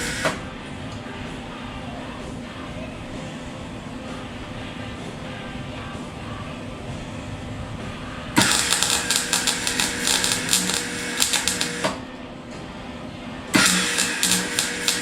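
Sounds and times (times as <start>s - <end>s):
welder arc crackling: 0.0s - 0.5s, 8.3s - 12.2s, 13.5s - 15.0s.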